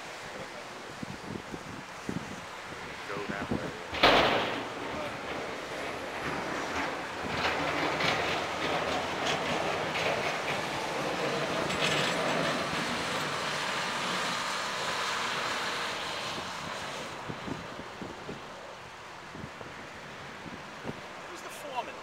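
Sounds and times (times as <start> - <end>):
sharp rattles and scrapes: 3.6 - 14.3
heavy machinery running: 3.9 - 17.0.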